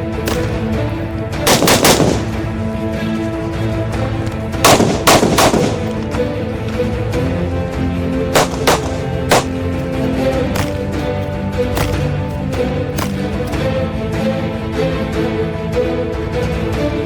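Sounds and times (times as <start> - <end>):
gunshots in rapid bursts: 0.0 - 3.6, 4.2 - 6.3, 8.2 - 13.6
background music: 0.0 - 17.0.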